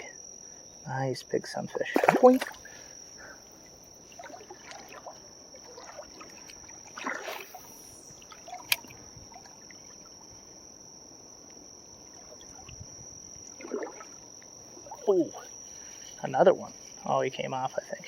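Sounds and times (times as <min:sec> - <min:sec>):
cricket trill: 0:00.0 - 0:18.0
faint creek water: 0:01.7 - 0:10.6, 0:11.9 - 0:17.2
sharp click: 0:08.7 - 0:09.0.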